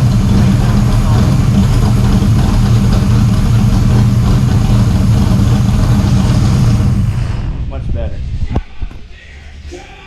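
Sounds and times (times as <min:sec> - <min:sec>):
car engine idling loudly: 0:00.0 - 0:07.4.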